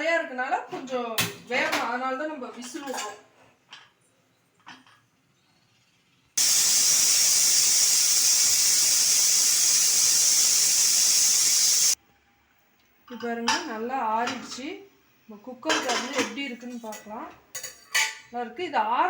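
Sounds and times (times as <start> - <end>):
pressure cooker steam whistle: 6.4 - 12.0.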